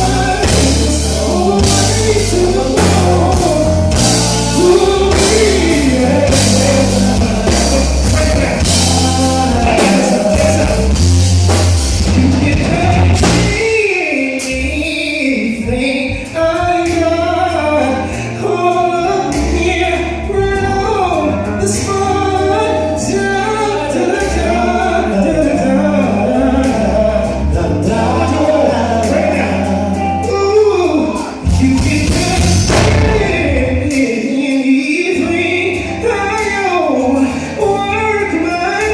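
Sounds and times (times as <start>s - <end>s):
drums and cymbals: 0.0s - 14.8s, 29.0s - 38.9s
bass line: 0.0s - 38.9s.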